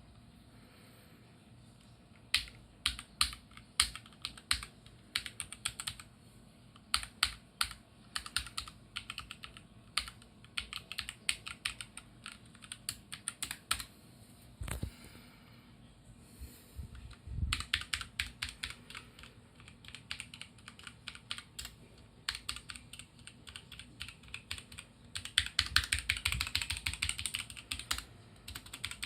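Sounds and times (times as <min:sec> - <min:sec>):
computer keyboard keys clicking: 0:02.2 - 0:06.1, 0:06.8 - 0:13.9, 0:16.9 - 0:29.0.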